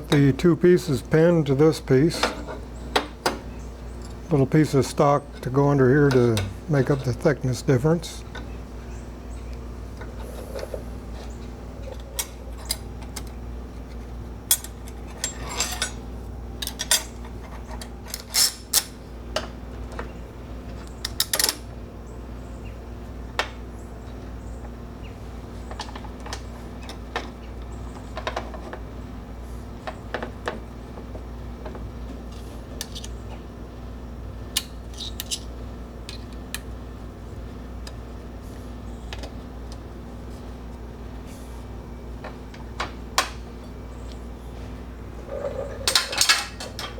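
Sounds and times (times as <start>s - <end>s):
metal tools clinking: 14.5s - 16.0s, 16.6s - 19.0s, 45.3s - 46.9s.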